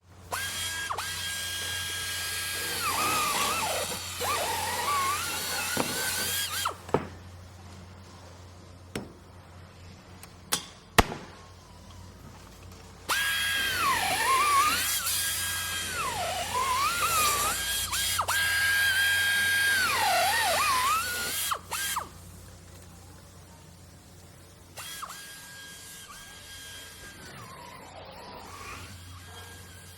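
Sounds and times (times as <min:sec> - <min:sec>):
power drill whining: 0:00.3 - 0:06.8, 0:13.1 - 0:22.1, 0:24.8 - 0:29.9.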